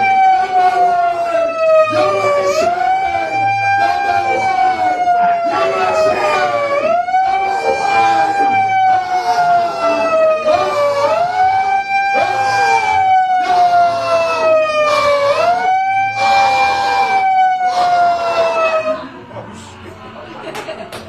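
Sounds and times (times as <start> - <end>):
electronic siren wailing: 0.0 - 19.2.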